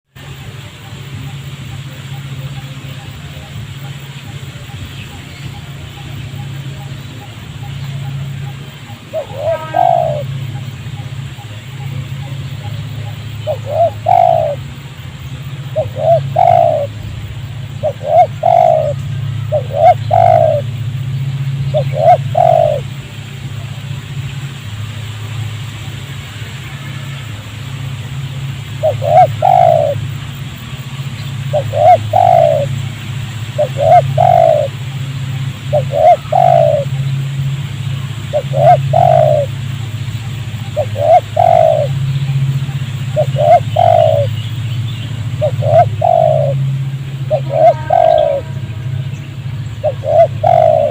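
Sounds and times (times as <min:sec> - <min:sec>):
steady low hum: 0:00.2 - 0:50.9
dove cooing: 0:01.6 - 0:14.8, 0:15.6 - 0:17.0, 0:17.7 - 0:20.7, 0:21.7 - 0:22.9, 0:28.8 - 0:30.1, 0:31.5 - 0:32.8, 0:33.6 - 0:37.1, 0:38.2 - 0:44.4, 0:45.2 - 0:50.9.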